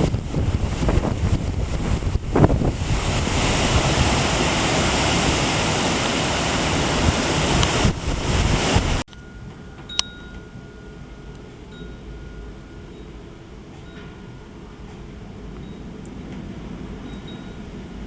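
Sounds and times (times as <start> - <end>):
strong wind buffeting microphone: 0.0 - 9.4, 10.9 - 18.0
faint steady tone: 9.1 - 16.2.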